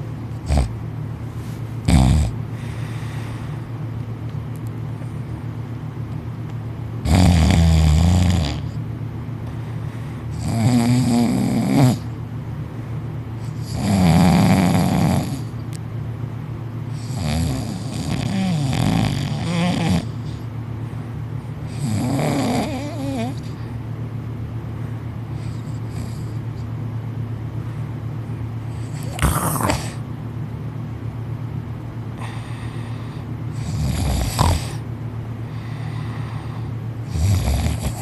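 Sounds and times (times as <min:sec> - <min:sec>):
loud heavy snoring: 0:00.5 - 0:00.7, 0:01.8 - 0:02.4, 0:07.0 - 0:08.8, 0:10.4 - 0:12.1, 0:13.4 - 0:15.5, 0:17.0 - 0:20.4, 0:21.7 - 0:23.5, 0:28.8 - 0:30.0, 0:33.6 - 0:34.8, 0:37.1 - 0:38.0.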